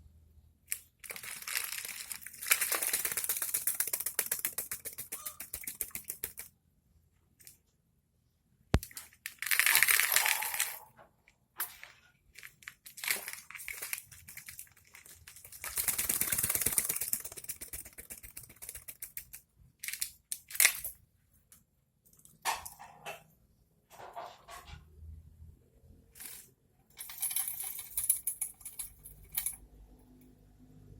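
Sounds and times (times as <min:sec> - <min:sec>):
bird wings fluttering: 0:02.4 - 0:06.5, 0:15.4 - 0:19.1.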